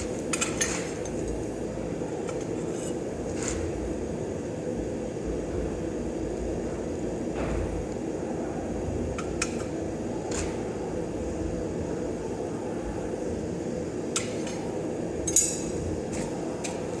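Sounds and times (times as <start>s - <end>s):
shop machinery drone: 0.0s - 17.0s.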